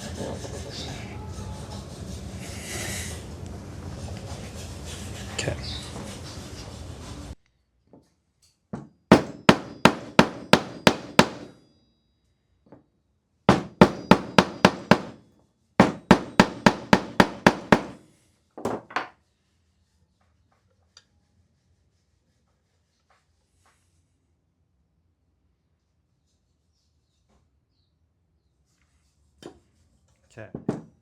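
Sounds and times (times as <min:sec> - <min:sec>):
hammer tapping with short ring: 0:09.1 - 0:11.6, 0:13.5 - 0:15.2, 0:15.8 - 0:18.0.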